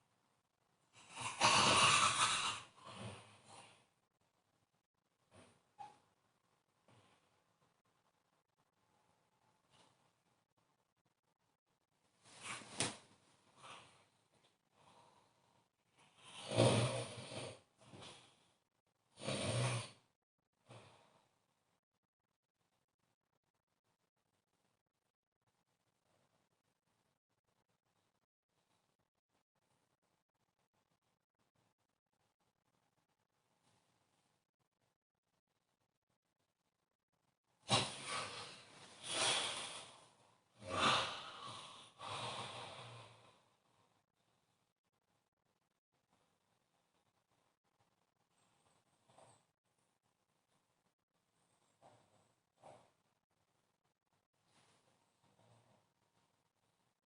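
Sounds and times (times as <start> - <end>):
person snoring: 1.0 - 3.9, 16.0 - 18.3, 19.1 - 20.1, 37.7 - 43.5.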